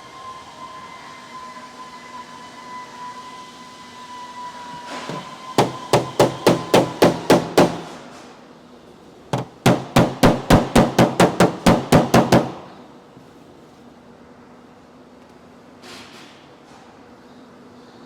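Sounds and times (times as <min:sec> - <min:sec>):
hammer striking metal: 0:05.1 - 0:08.0, 0:09.4 - 0:12.8.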